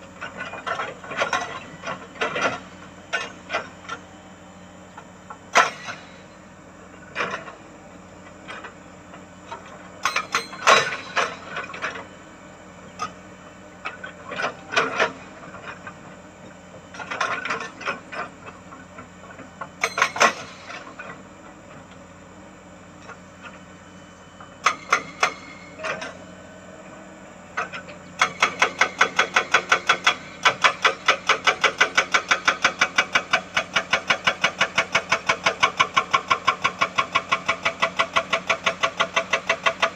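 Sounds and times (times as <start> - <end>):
engine hum: 0.0 - 39.9
hydraulic breaker hammering: 10.0 - 12.0, 19.8 - 20.9.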